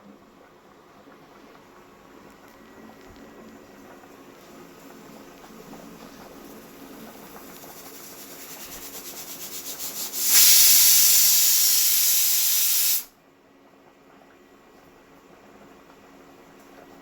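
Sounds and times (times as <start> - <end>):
steam jet hissing: 7.1 - 13.1
pressure cooker whistling: 8.2 - 13.1.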